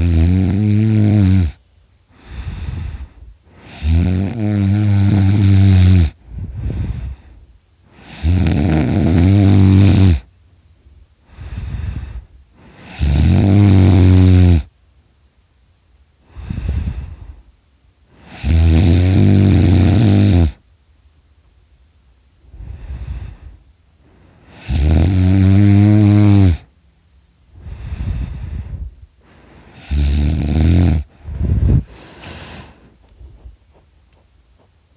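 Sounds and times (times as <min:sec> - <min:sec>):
person snoring loudly: 0:00.0 - 0:01.6, 0:02.2 - 0:07.3, 0:07.9 - 0:10.3, 0:11.3 - 0:14.7, 0:16.3 - 0:17.4, 0:18.2 - 0:20.6, 0:24.5 - 0:26.7, 0:27.6 - 0:32.8
quiet breath: 0:01.5 - 0:04.0, 0:06.1 - 0:08.2, 0:11.1 - 0:13.0, 0:16.2 - 0:18.4, 0:22.4 - 0:24.7, 0:27.4 - 0:30.2, 0:31.0 - 0:33.8.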